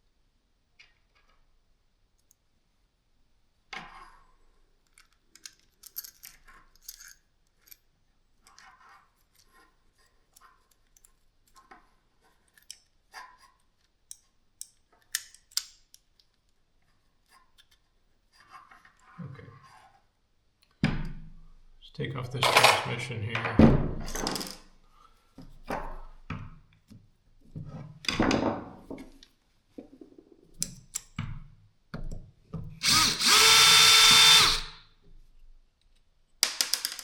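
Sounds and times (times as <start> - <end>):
tools clicking and clinking: 4.9 - 7.8, 24.1 - 24.6.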